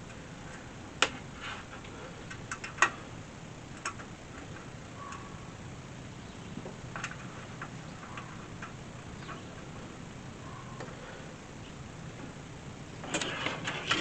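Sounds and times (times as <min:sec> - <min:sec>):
low steady hum: 0:00.0 - 0:14.0
small parts clicking and tapping: 0:01.8 - 0:03.0, 0:03.7 - 0:05.2.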